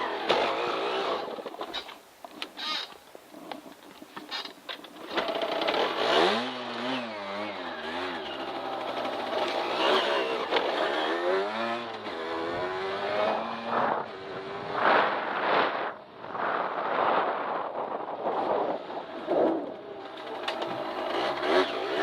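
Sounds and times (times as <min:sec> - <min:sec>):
two-stroke motorbike engine revving: 0:00.0 - 0:02.0, 0:05.0 - 0:17.3, 0:18.4 - 0:22.0
short rushes of noise: 0:12.0 - 0:21.4.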